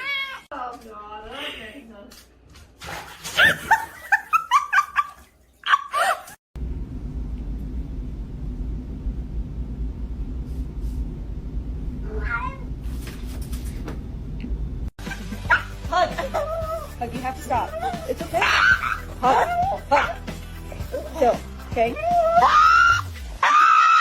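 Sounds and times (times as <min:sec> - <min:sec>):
steady low hum: 0:06.6 - 0:14.9.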